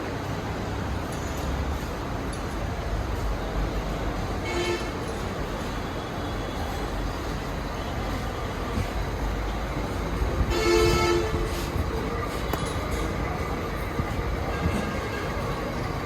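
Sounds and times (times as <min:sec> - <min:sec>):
road traffic: 0:00.0 - 0:16.0
vehicle horn toot: 0:10.5 - 0:11.5.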